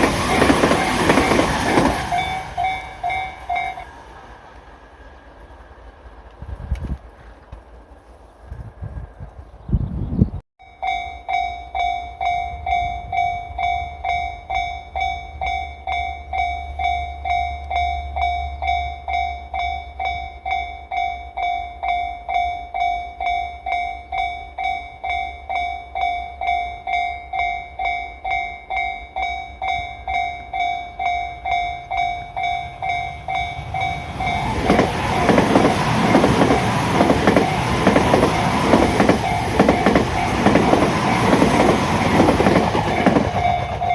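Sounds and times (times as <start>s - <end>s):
train wheels clattering over rail joints: 0.0s - 3.7s, 33.8s - 43.9s
level crossing alarm bell: 0.0s - 3.9s, 10.6s - 34.8s, 42.8s - 43.9s
electric train passing: 0.0s - 9.6s, 10.7s - 43.9s.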